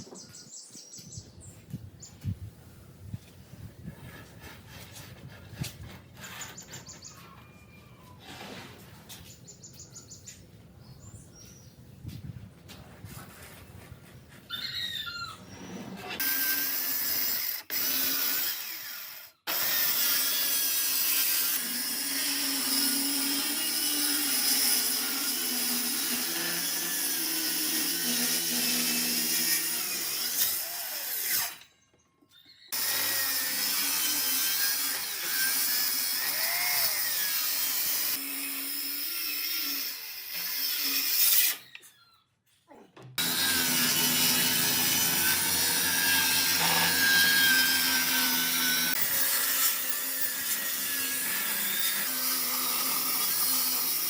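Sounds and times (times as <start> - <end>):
power tool cutting wood: 16.1 - 31.7, 32.7 - 41.7, 43.2 - 54.0.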